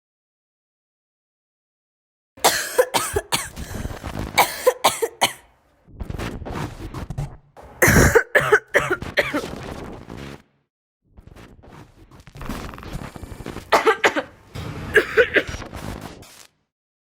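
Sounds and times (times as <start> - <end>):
person coughing harshly: 2.4 - 5.5, 7.8 - 9.4, 13.8 - 14.3, 14.9 - 15.6.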